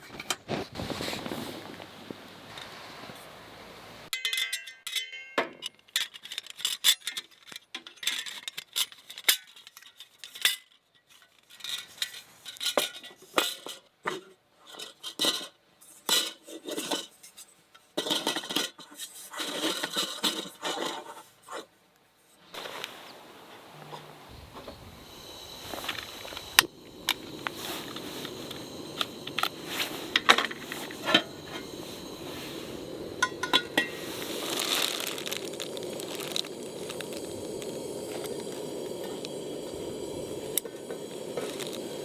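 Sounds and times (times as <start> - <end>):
metal cookware clinking and scraping: 4.2 - 5.7, 18.0 - 21.1, 33.2 - 34.1.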